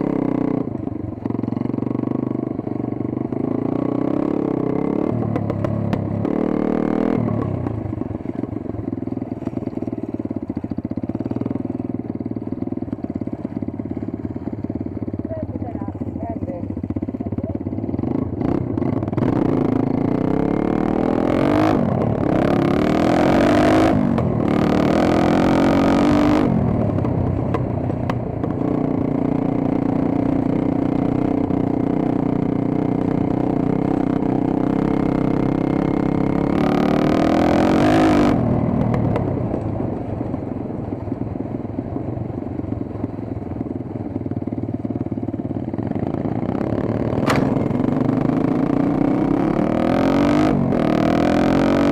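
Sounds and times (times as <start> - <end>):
dirt bike engine revving: 3.4 - 7.5, 18.0 - 26.7, 34.5 - 38.4, 46.4 - 51.9.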